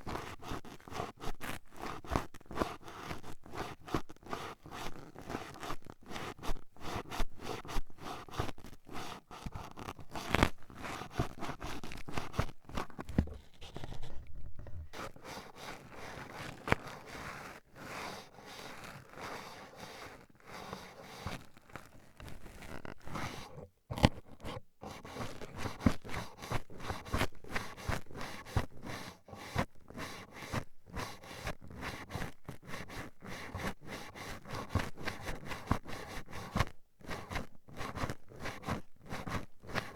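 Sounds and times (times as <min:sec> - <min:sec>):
toothpicks scratching against ear: 0:10.1 - 0:17.3, 0:22.2 - 0:29.7.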